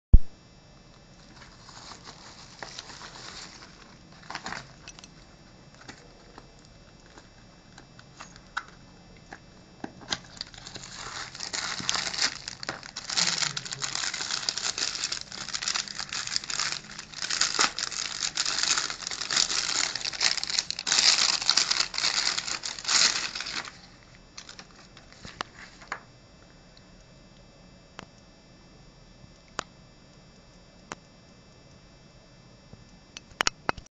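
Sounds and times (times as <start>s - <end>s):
packaging crinkling: 1.2s - 26.0s.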